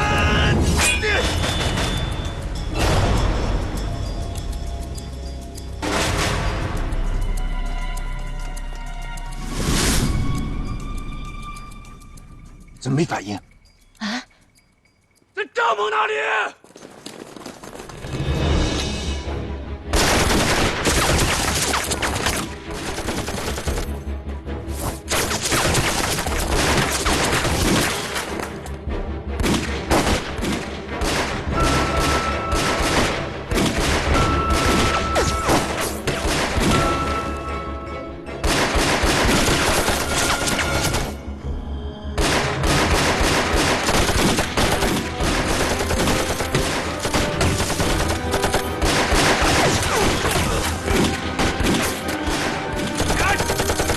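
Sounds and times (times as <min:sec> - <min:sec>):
dramatic background music: 0:00.0 - 0:15.0, 0:17.9 - 0:53.9
heavy gunfire: 0:42.2 - 0:53.9.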